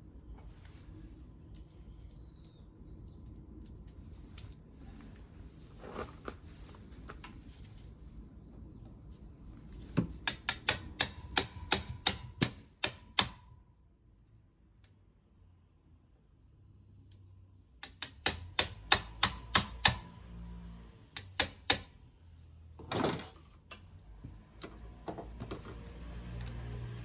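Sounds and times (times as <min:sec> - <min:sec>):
metal-on-metal taps ringing: 0:10.0 - 0:13.6, 0:17.8 - 0:20.2, 0:21.2 - 0:22.1.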